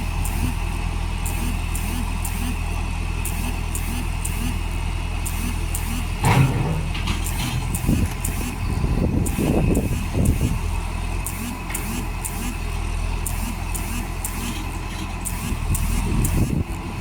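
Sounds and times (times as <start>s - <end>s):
diesel engine running: 0.0s - 17.0s
faint repeating sound: 0.2s - 2.6s, 3.2s - 16.7s
sudden loud burst of noise: 5.9s - 8.6s.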